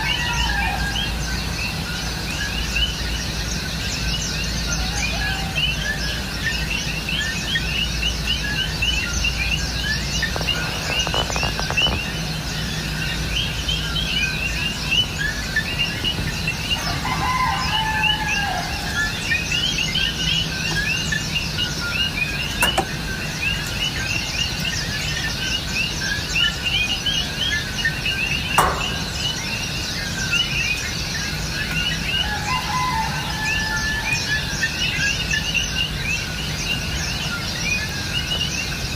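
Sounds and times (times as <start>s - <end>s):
flock of birds chirping: 0.0s - 38.9s
sharp clicks: 28.6s - 29.7s.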